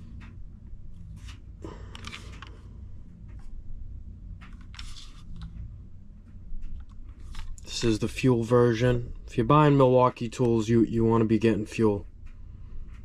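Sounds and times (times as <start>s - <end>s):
clicks and rustles of handling: 0.0s - 3.6s, 4.3s - 9.4s
steady low hum: 0.0s - 13.0s.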